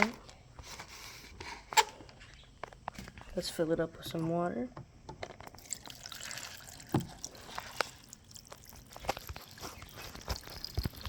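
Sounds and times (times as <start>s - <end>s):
water pouring into a container: 5.5s - 11.0s.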